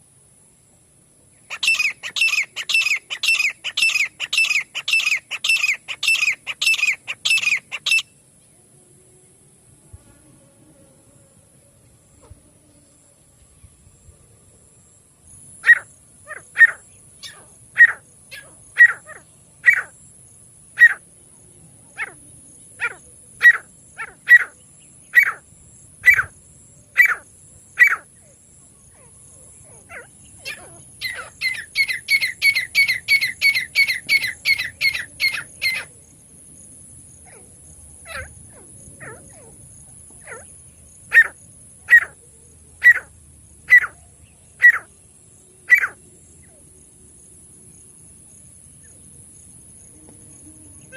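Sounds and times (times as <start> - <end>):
francolin calling: 1.4 - 8.2, 15.4 - 20.0, 20.7 - 21.1, 21.9 - 36.0, 37.2 - 46.7.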